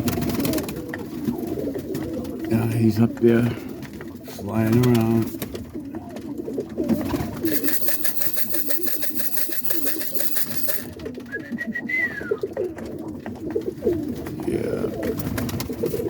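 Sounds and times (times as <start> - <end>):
pigeons cooing: 0.0 - 16.0
rapid rustling: 7.4 - 11.0.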